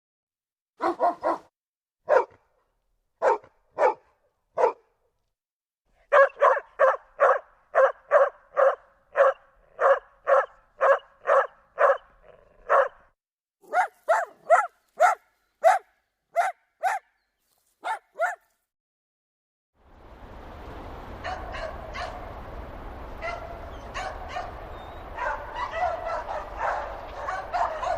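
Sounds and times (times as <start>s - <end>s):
dogs barking: 0.8s - 1.5s, 2.1s - 2.4s, 3.2s - 4.9s, 6.1s - 17.2s, 17.8s - 18.5s, 21.2s - 22.4s, 23.2s - 27.9s.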